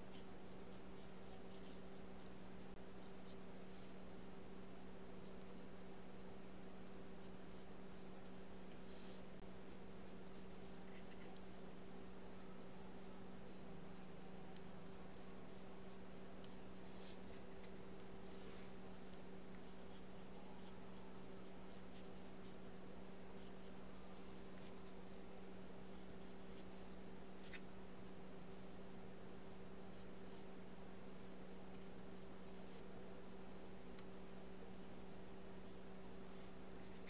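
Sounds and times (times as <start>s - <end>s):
low electrical hum: 0.0s - 37.0s
paintbrush strokes on paper: 0.1s - 4.0s, 7.2s - 28.7s.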